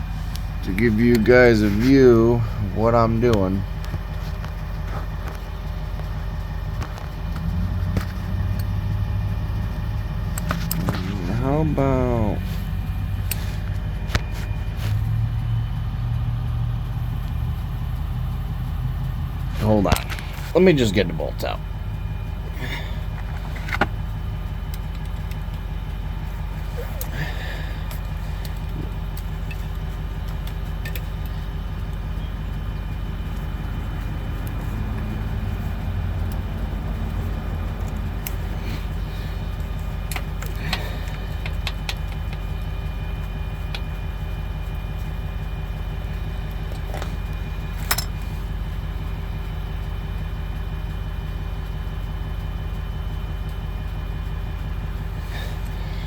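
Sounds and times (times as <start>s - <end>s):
engine idling: 0.0s - 56.0s
hand tools clinking on bolts: 46.8s - 48.4s.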